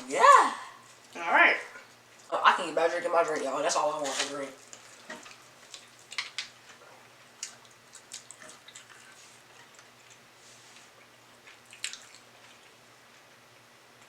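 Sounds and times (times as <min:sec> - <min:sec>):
wet mouth clicks and smacks: 0:11.5 - 0:12.3.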